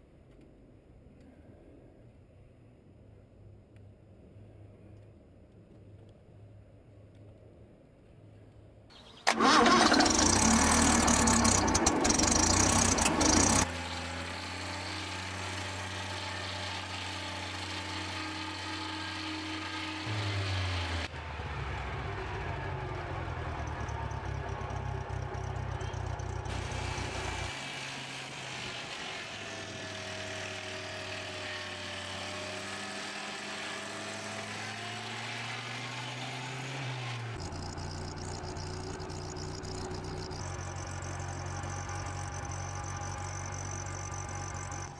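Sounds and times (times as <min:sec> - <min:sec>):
machinery engine humming: 0:09.2 - 0:34.0, 0:37.2 - 0:44.9.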